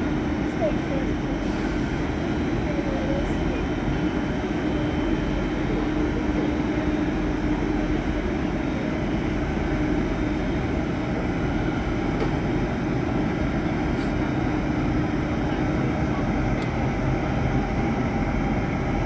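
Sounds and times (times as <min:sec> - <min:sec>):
electric locomotive hum: 0:00.0 - 0:19.0.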